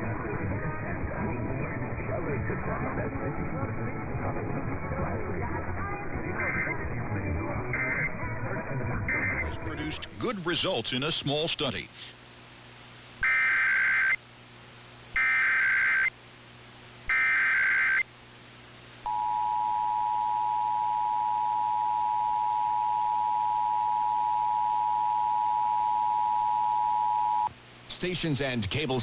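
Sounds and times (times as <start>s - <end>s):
screechy data tone bursts: 13.2s - 14.2s, 15.2s - 16.1s, 17.1s - 18.1s.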